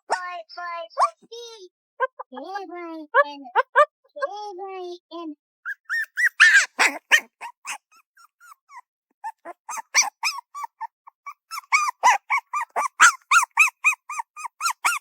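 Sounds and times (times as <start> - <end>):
puppy yipping: 1.0 - 1.2, 3.6 - 3.9, 5.6 - 15.0
puppy barking harshly: 5.8 - 7.8, 9.2 - 10.9, 11.5 - 15.0.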